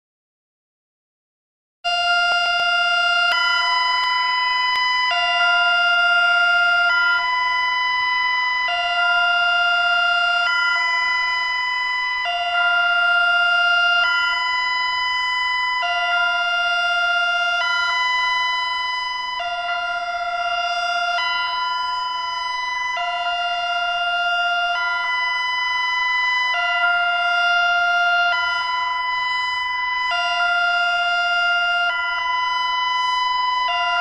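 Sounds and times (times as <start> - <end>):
electronic emergency alert tone: 1.9 - 34.0.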